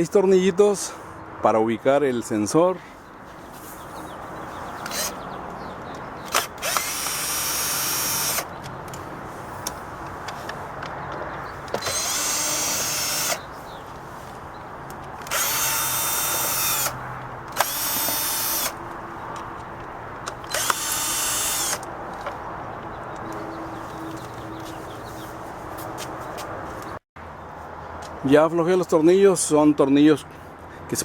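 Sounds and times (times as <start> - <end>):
power drill motor whine: 4.8 - 5.2, 6.2 - 8.5, 11.7 - 13.5, 15.2 - 18.9, 20.4 - 21.9.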